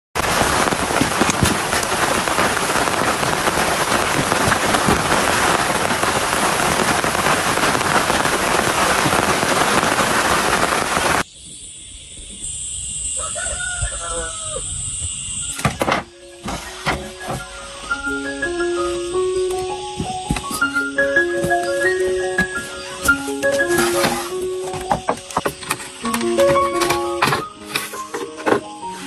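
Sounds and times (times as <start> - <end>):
heavy rain pouring: 0.1 - 11.2
rooster crowing: 13.0 - 15.0.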